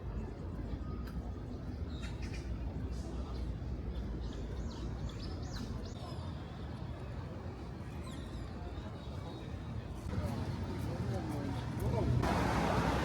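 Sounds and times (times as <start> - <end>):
city traffic rumble: 0.0 - 13.0.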